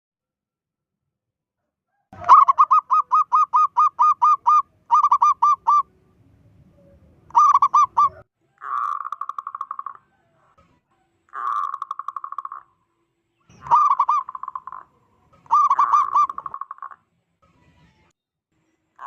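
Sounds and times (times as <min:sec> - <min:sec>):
dove cooing: 0:02.2 - 0:06.0, 0:06.8 - 0:10.5, 0:13.5 - 0:17.0
buzzy rattle of bird notes: 0:08.8 - 0:10.0, 0:11.4 - 0:12.8, 0:13.5 - 0:17.9.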